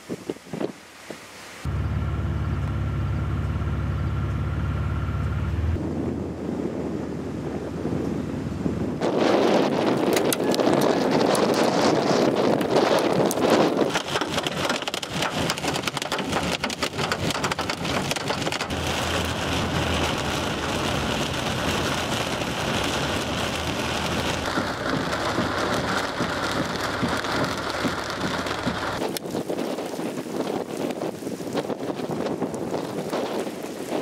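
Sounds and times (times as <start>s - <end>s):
low thunder rumble: 5.4s - 30.8s
heavy rain patter: 9.0s - 34.0s.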